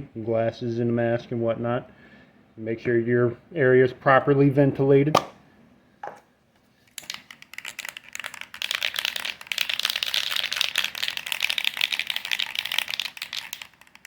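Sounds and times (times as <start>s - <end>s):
aerosol can ball rattling: 6.9s - 14.0s.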